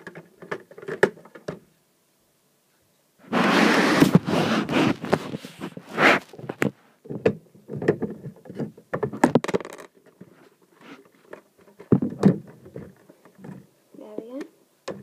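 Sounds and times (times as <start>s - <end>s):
plastic pieces scraping rustle: 3.3s - 6.8s
plastic pieces clicking: 9.2s - 10.0s.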